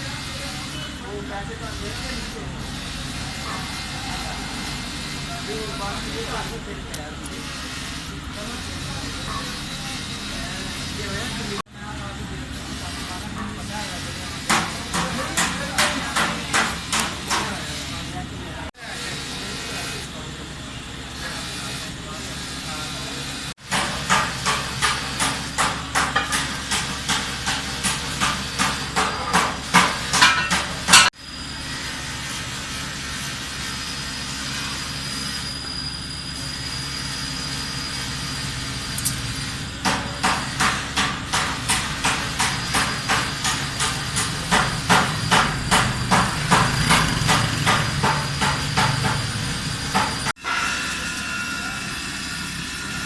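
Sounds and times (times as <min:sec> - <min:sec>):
hammer blows: 0:23.6 - 0:31.2, 0:39.7 - 0:53.0.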